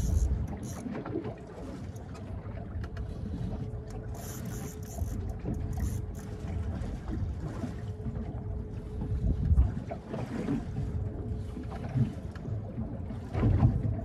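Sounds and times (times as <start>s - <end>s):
wind buffeting microphone: 0.0s - 1.2s, 8.7s - 12.1s.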